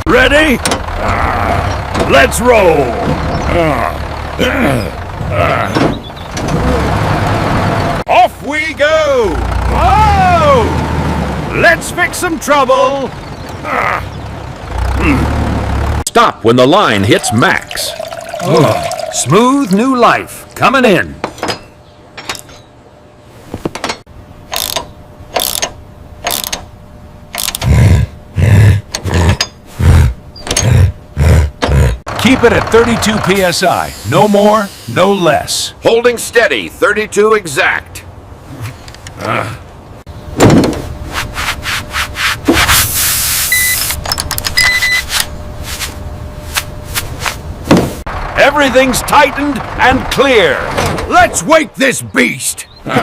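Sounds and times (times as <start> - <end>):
wrench clicking and scraping: 23.8 - 26.6, 27.3 - 27.6
mechanical ratcheting strokes: 27.3 - 27.7
air hiss: 42.5 - 43.8
short high beeps: 43.5 - 43.9, 44.6 - 45.1.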